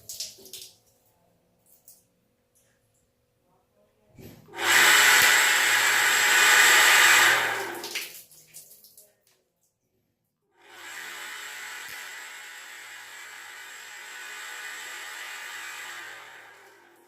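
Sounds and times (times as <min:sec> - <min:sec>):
water gushing from a tap: 0:00.0 - 0:00.8, 0:04.5 - 0:09.1.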